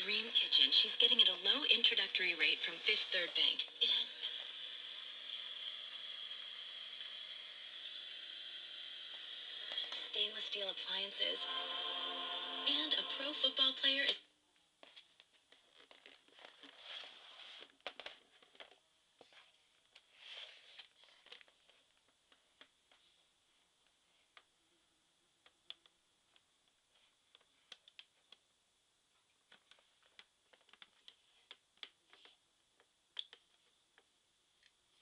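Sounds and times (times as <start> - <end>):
faint steady high hiss: 0.0 - 14.8
faint scattered clicks and taps: 25.4 - 28.5, 29.1 - 34.8.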